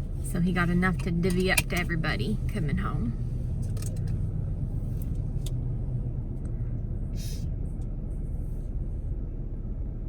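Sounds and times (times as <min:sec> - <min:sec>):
vehicle engine running: 0:00.0 - 0:10.0.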